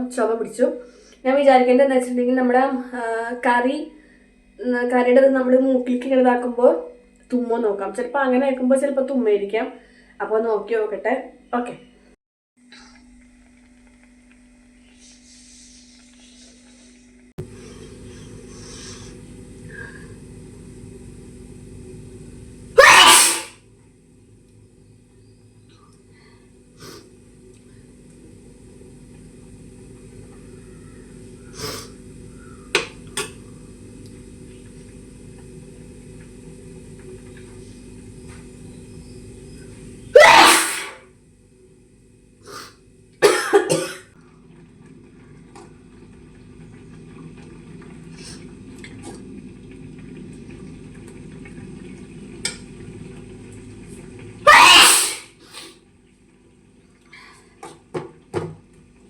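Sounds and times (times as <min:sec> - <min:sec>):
steady low hum: 0:11.2 - 0:22.8
woman coughing: 0:22.8 - 0:23.5, 0:40.2 - 0:41.0, 0:43.2 - 0:44.2.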